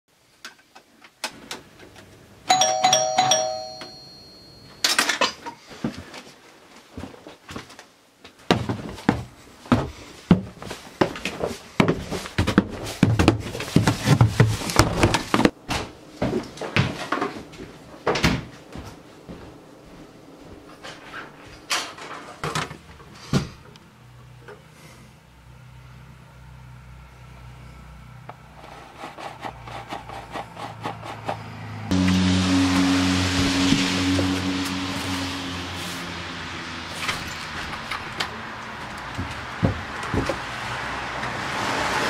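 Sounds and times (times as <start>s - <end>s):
doorbell chime: 2.5s - 4.9s.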